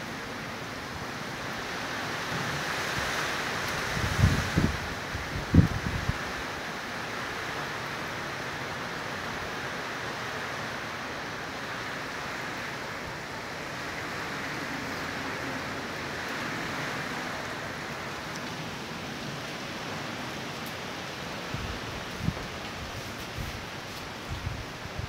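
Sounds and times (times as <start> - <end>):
rain hissing: 0.0 - 25.0
storm wind blowing: 2.6 - 6.7, 11.7 - 25.0.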